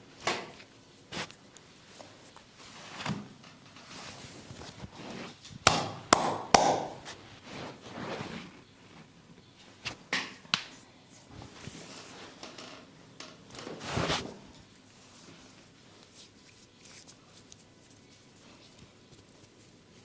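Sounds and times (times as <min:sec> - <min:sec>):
hands slapping bare skin: 0:05.7 - 0:07.0.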